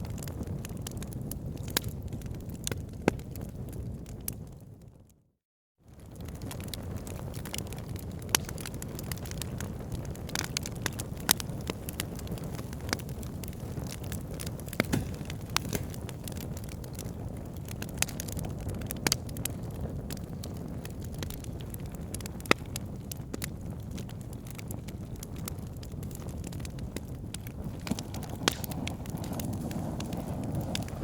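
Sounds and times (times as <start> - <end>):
fire crackling: 0.0 - 4.8, 5.9 - 31.0
low rumble of flames: 0.0 - 5.2, 5.9 - 31.0
sharp wood pops: 14.7 - 16.4, 27.8 - 29.4.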